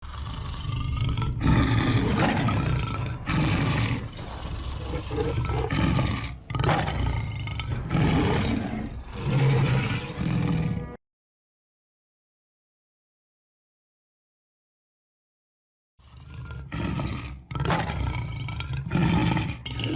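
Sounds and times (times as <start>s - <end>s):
lion roaring: 0.0s - 11.0s, 16.0s - 19.9s.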